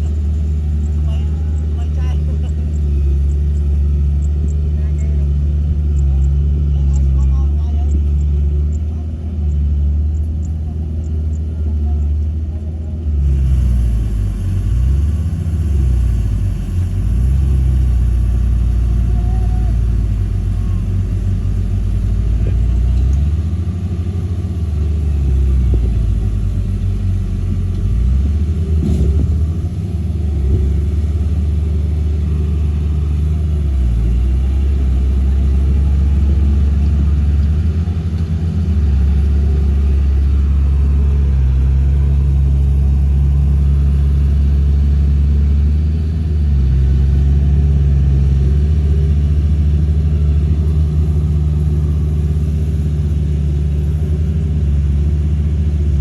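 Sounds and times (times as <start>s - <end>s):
bulldozer diesel engine: 0.0s - 56.0s.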